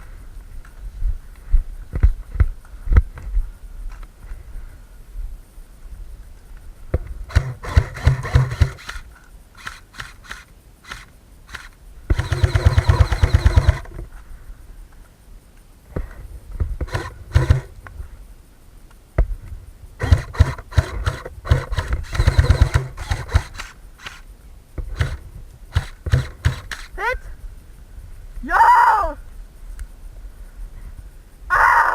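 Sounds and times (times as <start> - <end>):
airsoft gun firing full auto: 7.3 - 14.0, 16.9 - 17.7, 20.0 - 24.3, 24.9 - 26.9.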